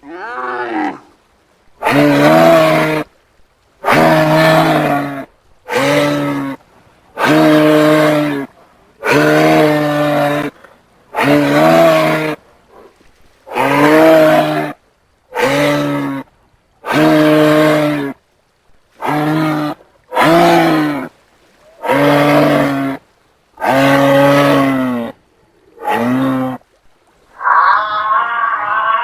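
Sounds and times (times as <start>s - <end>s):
giraffe deep calls: 27.3s - 29.0s.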